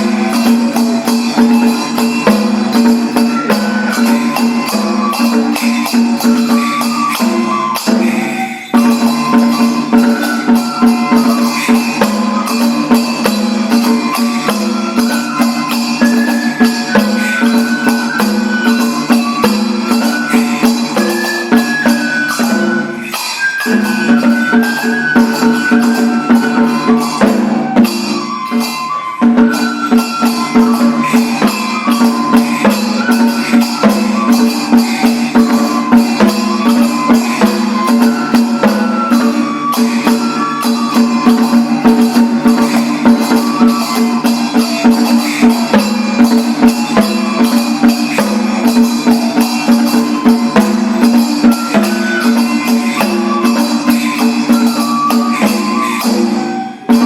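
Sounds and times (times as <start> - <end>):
quick dense percussion strokes: 0.0 - 57.0.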